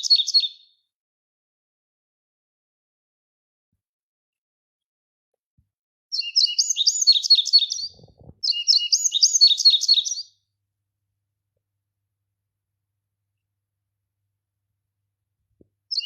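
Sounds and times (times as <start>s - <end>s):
songbird whistling: 0.0s - 0.7s, 6.1s - 10.4s.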